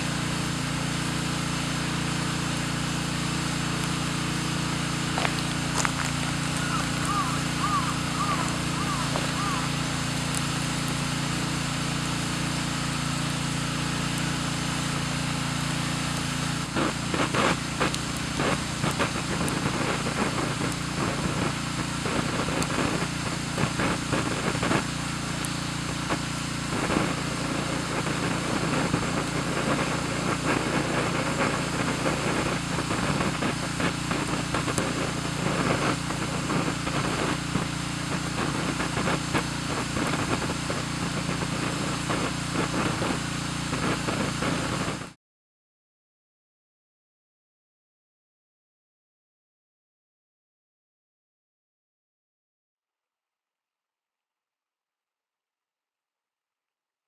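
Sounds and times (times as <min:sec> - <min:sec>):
campfire crackling and popping: 0:00.1 - 0:44.8.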